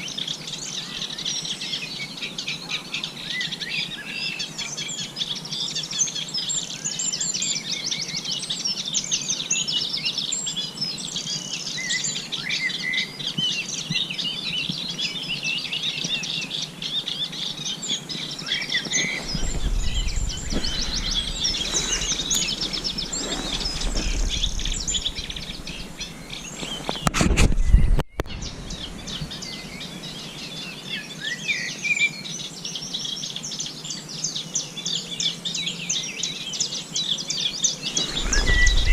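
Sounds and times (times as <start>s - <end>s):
songbirds chirping: 0.0s - 38.9s
low rumble: 19.0s - 27.0s, 37.8s - 38.9s
loud burst of noise: 19.2s - 29.0s.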